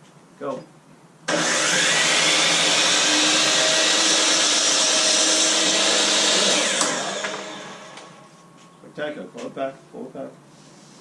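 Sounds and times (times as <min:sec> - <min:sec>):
miter saw cutting wood: 0:01.3 - 0:08.3
saw motor winding down: 0:01.3 - 0:08.3.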